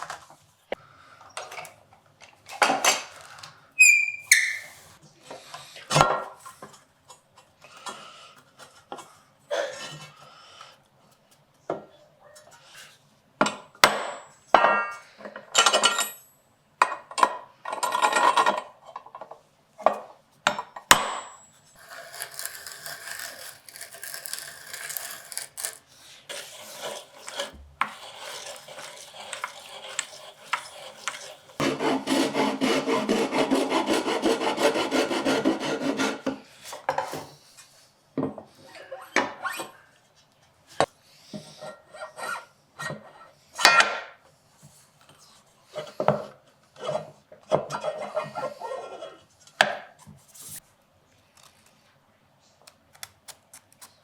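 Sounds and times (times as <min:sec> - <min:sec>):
scraping wood: 0:21.8 - 0:36.4.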